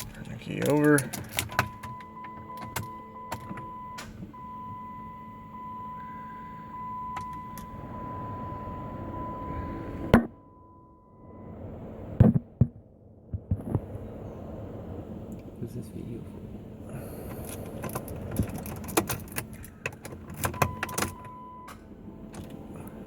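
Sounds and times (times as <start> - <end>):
car ignition clicks: 0.0 - 4.5, 7.0 - 7.8, 17.2 - 22.6
electronic beep tone: 1.6 - 11.7.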